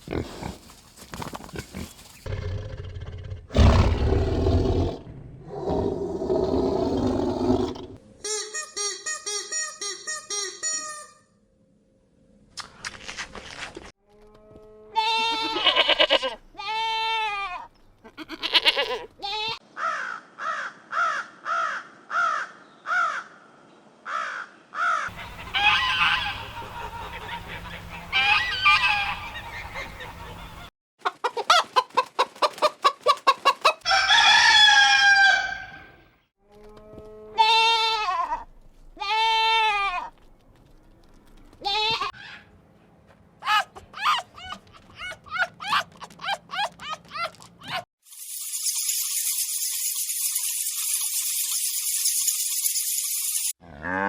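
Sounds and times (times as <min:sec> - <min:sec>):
chicken cackling: 0:24.1 - 0:36.1, 0:43.4 - 0:47.8
rooster crowing: 0:25.1 - 0:26.9, 0:28.1 - 0:29.4, 0:33.8 - 0:36.0
hens clucking: 0:25.1 - 0:34.9.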